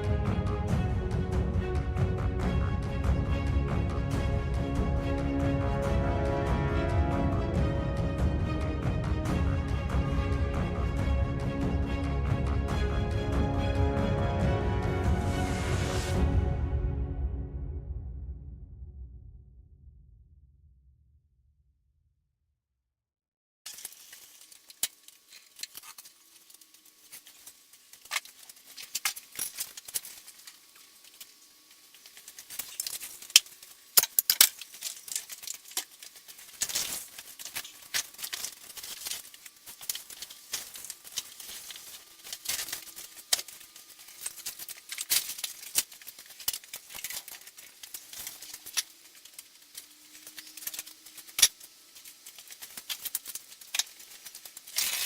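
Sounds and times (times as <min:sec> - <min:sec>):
small metal tools clinking: 0:32.0 - 0:55.0.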